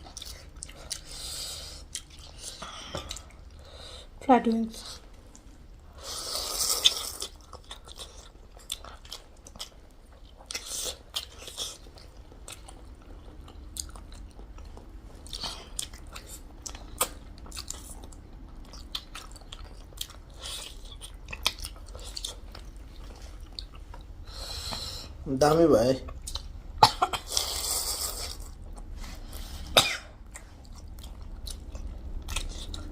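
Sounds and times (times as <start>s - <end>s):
person biting and chewing: 6.2s - 24.1s.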